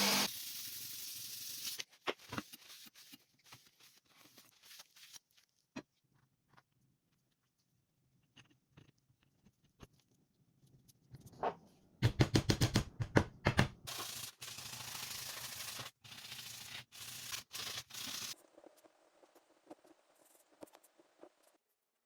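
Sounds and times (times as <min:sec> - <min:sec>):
sanding a knife blade: 0:13.9 - 0:18.4.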